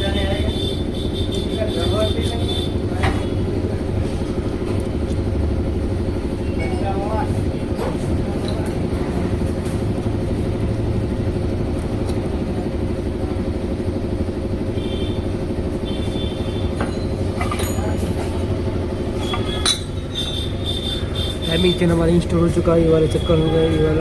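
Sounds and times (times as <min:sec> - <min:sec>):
vehicle engine running: 0:00.0 - 0:24.0
hand tools clinking on metal: 0:16.9 - 0:18.4, 0:19.2 - 0:21.9.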